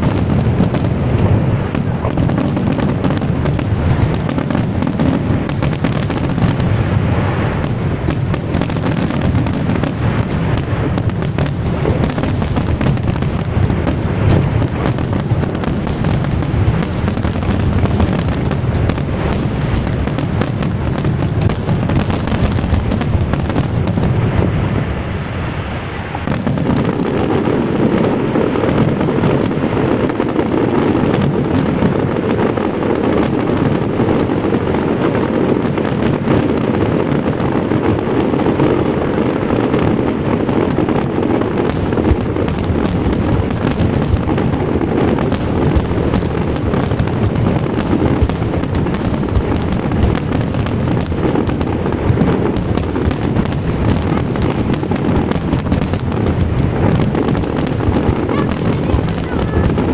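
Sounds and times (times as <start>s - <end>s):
fireworks booming: 0.0s - 59.9s
fireworks crackling: 0.0s - 59.9s.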